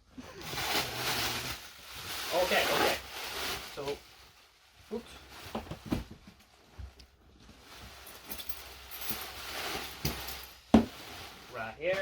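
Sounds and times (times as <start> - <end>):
packaging rustling: 0.4 - 4.2.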